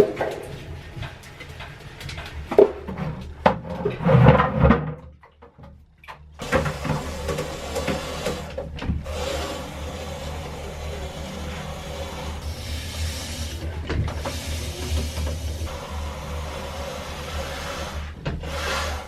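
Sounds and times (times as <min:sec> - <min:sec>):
knocks and clattering of objects: 0:00.0 - 0:09.1, 0:13.6 - 0:15.8.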